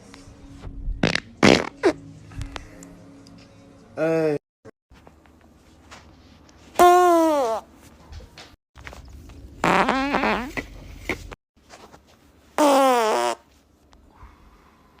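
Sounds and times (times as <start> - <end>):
squeaky farts: 1.0 - 2.0, 6.8 - 7.7, 9.6 - 11.2, 12.6 - 13.5.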